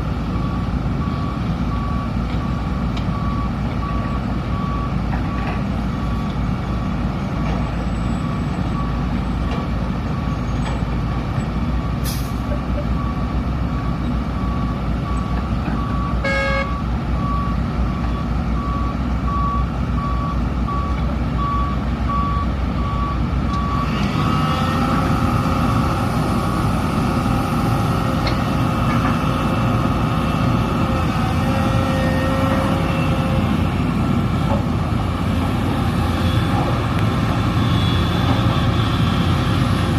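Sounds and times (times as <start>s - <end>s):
heavy diesel machinery running: 0.0s - 39.9s
reversing alarm beeping: 13.0s - 24.4s.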